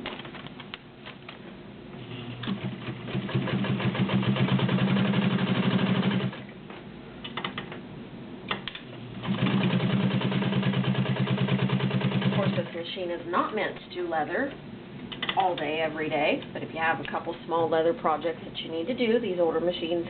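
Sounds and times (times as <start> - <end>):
sewing machine stitching: 2.3 - 6.4, 9.2 - 12.8.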